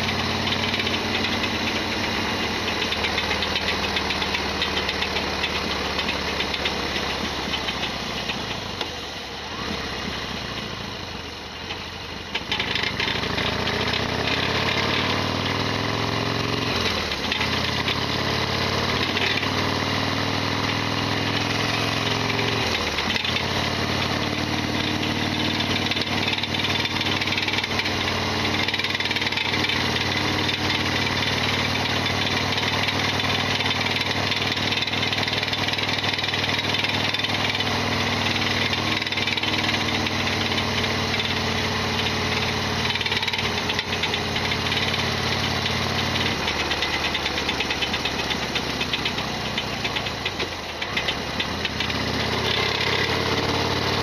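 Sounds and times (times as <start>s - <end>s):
loud mechanical rattling: 0.0s - 8.9s, 21.1s - 54.0s
motorcycle engine running: 0.0s - 54.0s.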